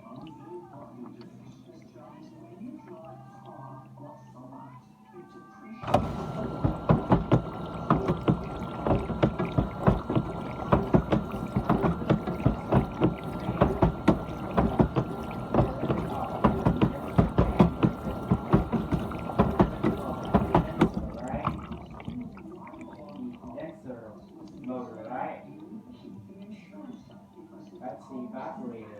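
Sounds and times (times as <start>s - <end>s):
dishwasher pump whine: 5.8s - 25.2s
water sloshing in dishwasher: 5.8s - 25.2s.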